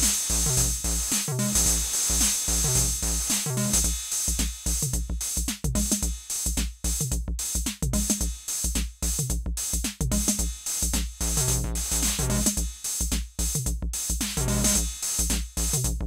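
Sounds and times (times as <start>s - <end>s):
hi-hat clicks: 0.0s - 16.0s
kick drum: 0.0s - 16.0s.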